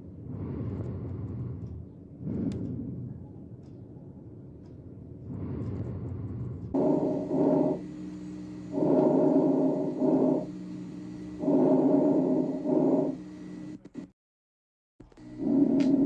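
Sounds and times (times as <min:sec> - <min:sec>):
faint steady hum: 0:00.0 - 0:14.1, 0:15.0 - 0:16.0
breath sounds through stethoscope: 0:00.2 - 0:03.4, 0:05.2 - 0:13.2.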